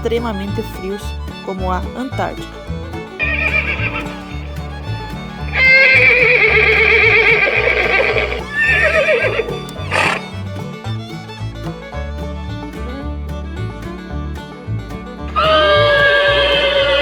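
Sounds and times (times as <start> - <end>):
background music with bass line: 0.0 - 17.0
horse whinnying: 3.2 - 4.6, 5.2 - 10.3, 15.3 - 17.0.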